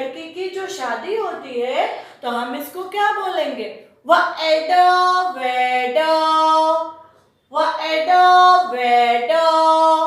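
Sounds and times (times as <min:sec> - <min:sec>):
woman singing: 0:04.1 - 0:10.0.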